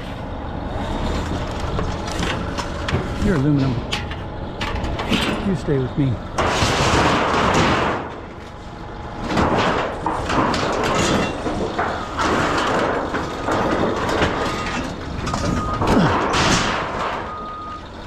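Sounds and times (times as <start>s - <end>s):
sheet metal clattering and scraping: 1.1s - 18.0s
faint reversing beeper: 14.4s - 16.1s, 17.2s - 18.0s.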